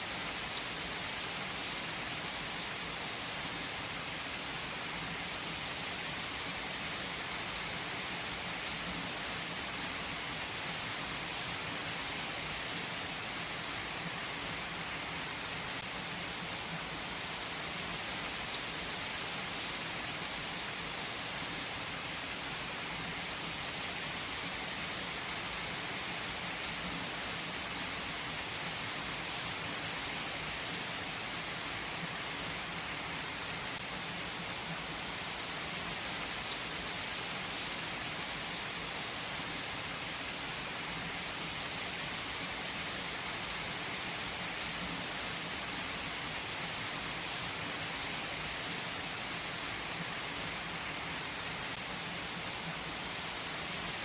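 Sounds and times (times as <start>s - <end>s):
heavy rain on trees: 0.0s - 54.0s.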